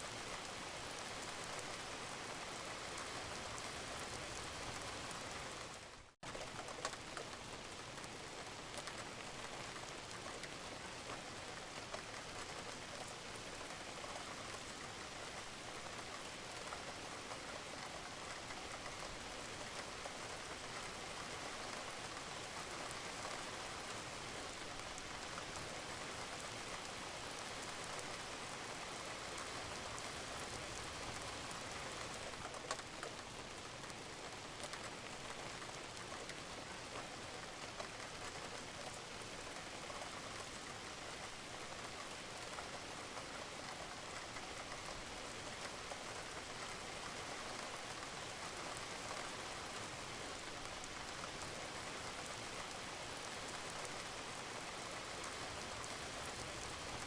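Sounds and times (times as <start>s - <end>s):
rain falling on a roof: 0.0s - 57.0s.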